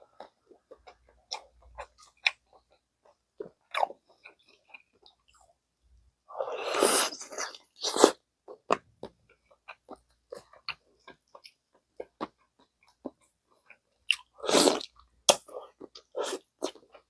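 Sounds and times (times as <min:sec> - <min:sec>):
person eating soup: 0:06.4 - 0:08.7, 0:14.1 - 0:17.0.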